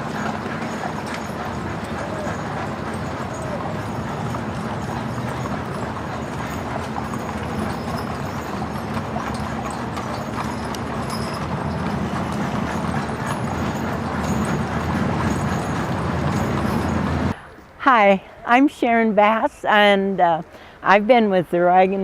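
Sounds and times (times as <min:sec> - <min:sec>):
horses hooves clip-clopping: 0:00.0 - 0:17.4.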